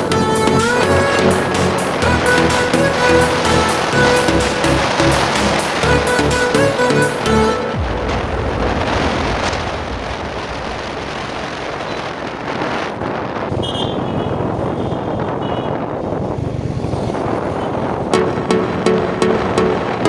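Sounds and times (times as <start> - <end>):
motorcycle running: 0.0 - 8.9, 15.9 - 20.0
wind buffeting microphone: 0.0 - 20.0.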